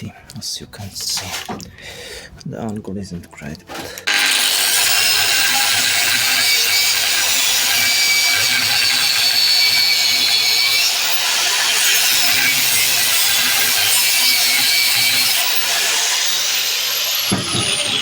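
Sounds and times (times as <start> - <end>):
power tool grinding metal: 3.7 - 18.0.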